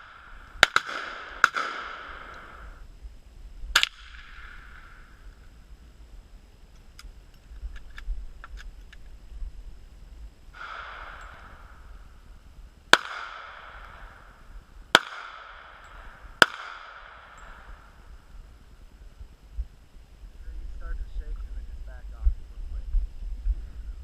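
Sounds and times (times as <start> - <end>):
gunshots with ringing echo: 0.0 - 2.8, 3.7 - 5.2, 10.6 - 12.2, 12.9 - 18.1
soft dull report: 17.3 - 24.0.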